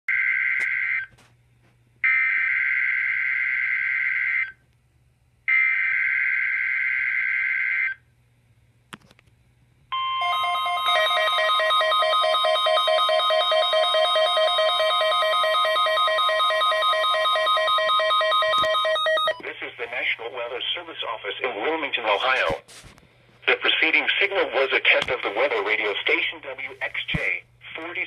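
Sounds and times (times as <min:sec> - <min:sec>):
rapidly alternating beeping tones: 0:10.0 - 0:19.4
weather radio alarm tone: 0:10.0 - 0:19.5.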